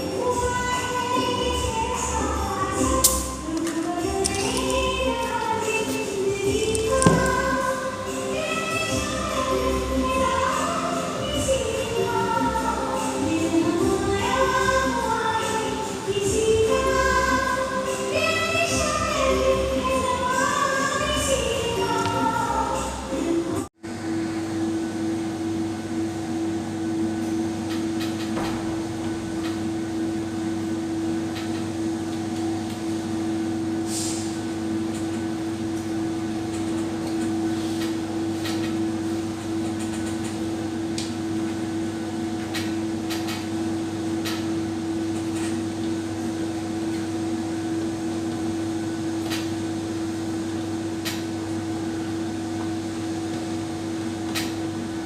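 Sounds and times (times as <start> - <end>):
steady hum: 0.0 - 55.0.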